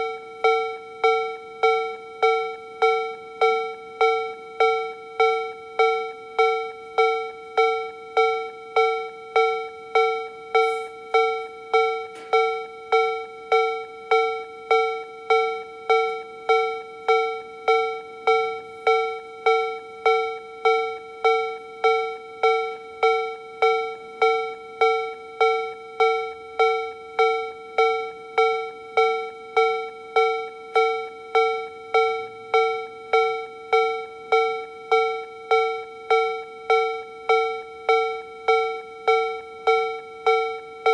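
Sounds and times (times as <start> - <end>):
level crossing alarm clanging: 0.0 - 40.9.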